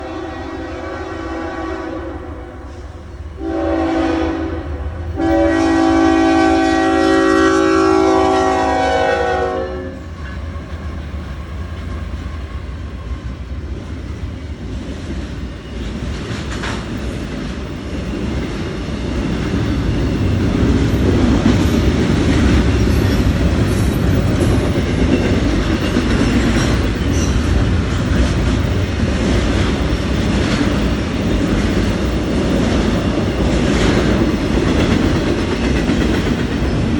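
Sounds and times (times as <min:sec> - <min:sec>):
locomotive horn blasts: 0:00.0 - 0:02.7, 0:03.4 - 0:10.1
train wheels rumbling and clacking: 0:02.6 - 0:36.9.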